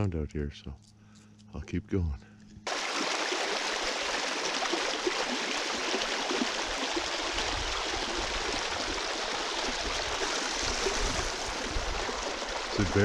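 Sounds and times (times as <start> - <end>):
stream water rushing: 2.7 - 13.0.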